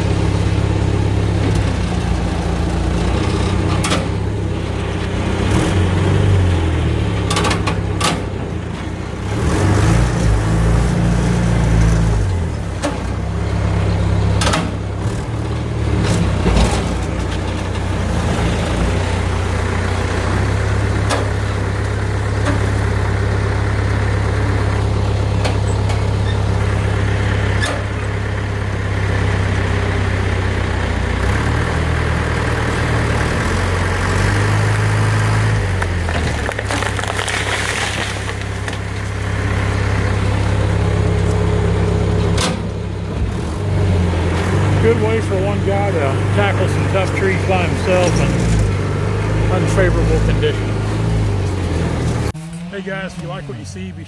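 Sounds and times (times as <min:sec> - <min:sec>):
diesel engine under load: 0:00.0 - 0:54.0
tree cracking and knocking: 0:35.5 - 0:40.2.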